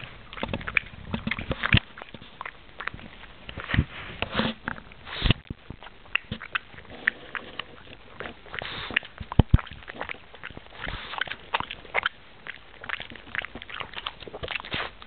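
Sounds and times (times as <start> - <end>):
dog chewing wetly: 0.0 - 15.0
dog snuffling: 3.5 - 5.4, 6.8 - 9.3, 9.9 - 11.9, 14.5 - 15.0.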